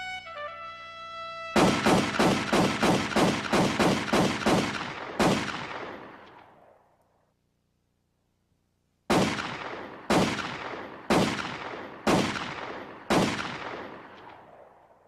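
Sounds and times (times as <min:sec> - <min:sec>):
gunshots: 0:01.5 - 0:06.9, 0:09.1 - 0:15.0.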